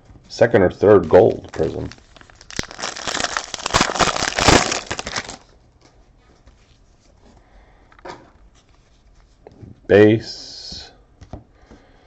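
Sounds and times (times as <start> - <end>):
wrapper tearing and crinkling: 1.1 - 5.5.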